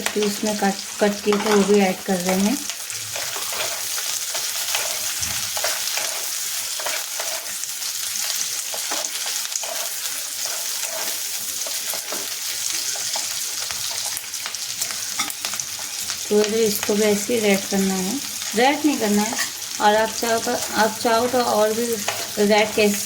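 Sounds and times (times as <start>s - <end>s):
vegetables sizzling in hot oil: 0.0s - 23.0s.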